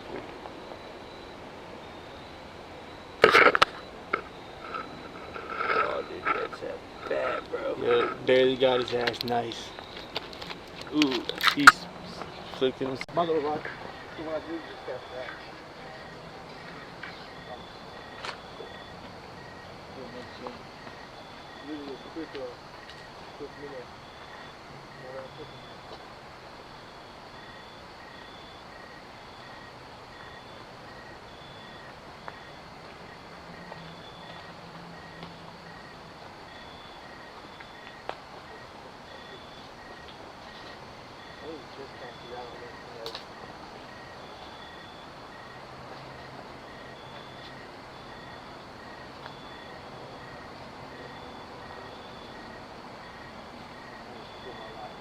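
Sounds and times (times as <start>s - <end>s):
high-pitched insect chirping: 0.0s - 55.0s
low-pitched insect chirping: 0.0s - 55.0s
steady hiss: 0.0s - 55.0s
sharp click: 43.0s - 43.3s.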